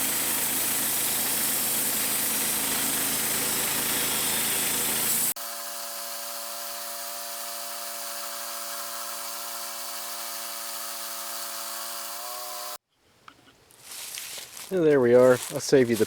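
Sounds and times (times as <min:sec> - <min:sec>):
band sawmill humming: 0:00.0 - 0:05.4.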